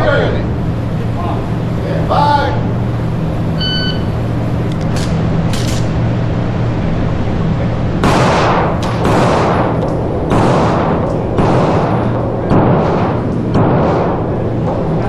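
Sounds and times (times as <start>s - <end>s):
low hum: 0.0s - 15.0s
shot timer beep: 3.6s - 4.2s
handgun shots with echo: 4.7s - 6.0s, 8.0s - 14.3s.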